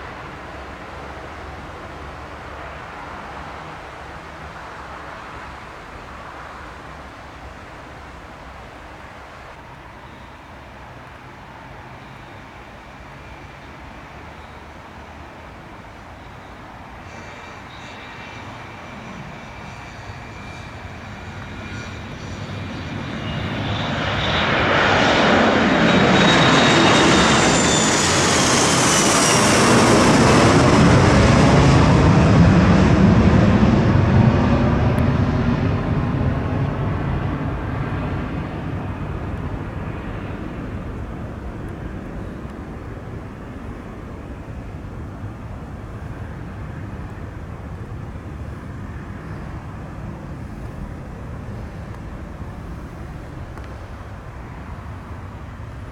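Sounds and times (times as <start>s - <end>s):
jet passing at takeoff power: 0.0s - 55.9s
high engine whine: 15.8s - 55.9s.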